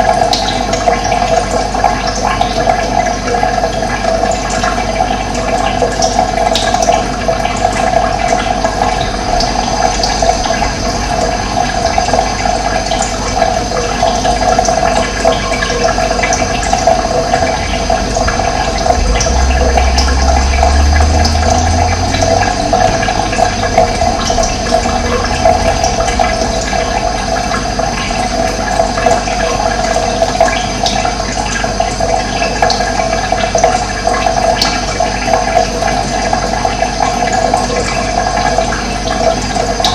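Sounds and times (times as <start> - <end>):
running water: 0.0 - 39.9
deep low rumble: 8.6 - 13.4, 16.3 - 29.6.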